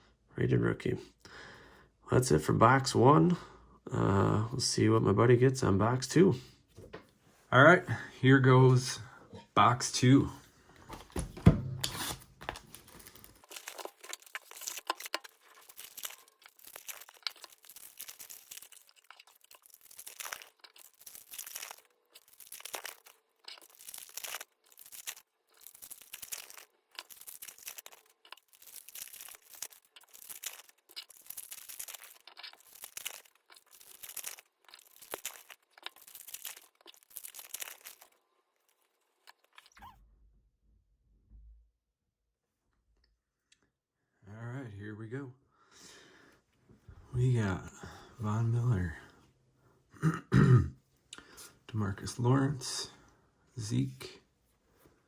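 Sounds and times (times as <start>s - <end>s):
card pack wrappers tearing and crinkling: 11.8s - 39.8s.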